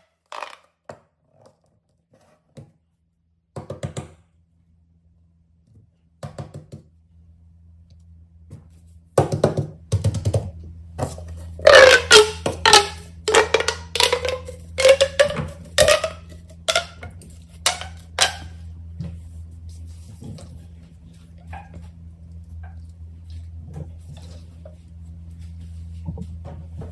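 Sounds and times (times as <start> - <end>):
steady low hum: 2.8 - 26.9
fidget toys popping: 11.7 - 17.0.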